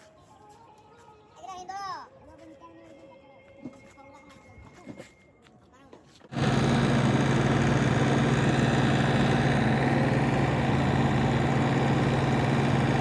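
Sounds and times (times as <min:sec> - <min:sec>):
engine running with low hum: 0:06.3 - 0:13.0.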